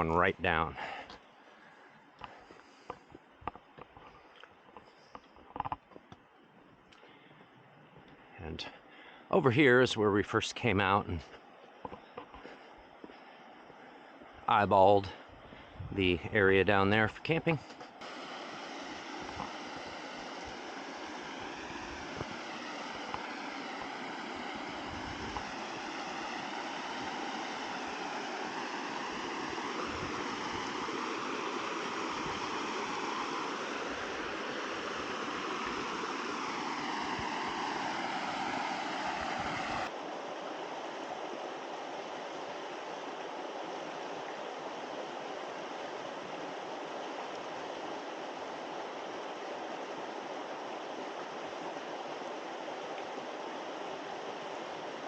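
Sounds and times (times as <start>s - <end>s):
stream splashing over rocks: 18.0s - 40.0s.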